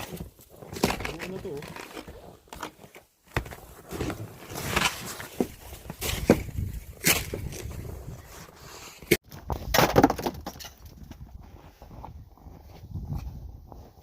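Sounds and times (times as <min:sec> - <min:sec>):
shovel scraping snow: 0:03.7 - 0:09.1.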